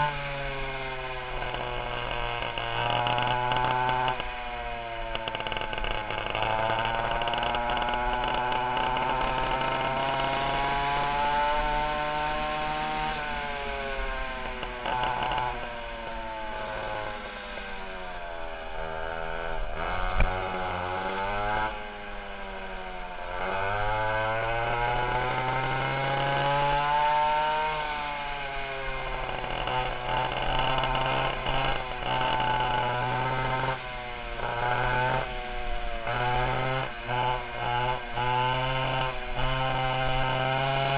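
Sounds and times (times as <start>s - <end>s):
go-kart two-stroke engines revving: 0.0s - 40.9s.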